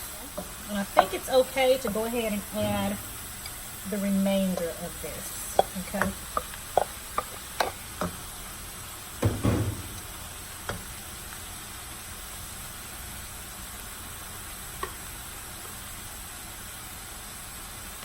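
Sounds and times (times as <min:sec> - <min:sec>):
food sizzling in oil: 0:00.0 - 0:18.0
utensil knocking and scraping pan: 0:00.9 - 0:01.3, 0:05.5 - 0:08.2.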